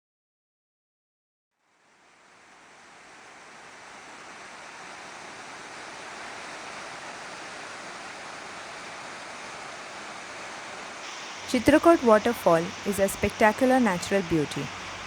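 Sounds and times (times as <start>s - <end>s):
waterfall rushing: 3.0s - 15.0s.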